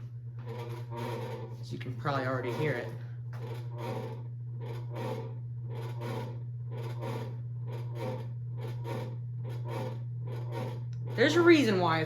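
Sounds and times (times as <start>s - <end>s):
ceiling fan humming: 0.0s - 12.0s
fan scraping rub: 0.0s - 12.0s.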